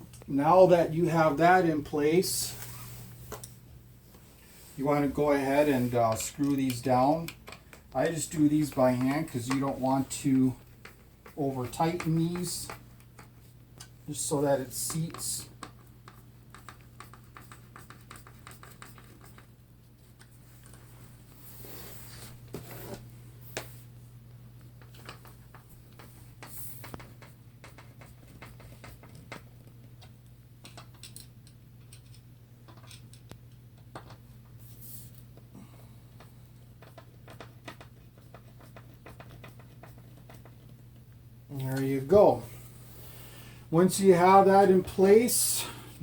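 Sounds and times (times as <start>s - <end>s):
steady low hum: 0.0s - 46.0s.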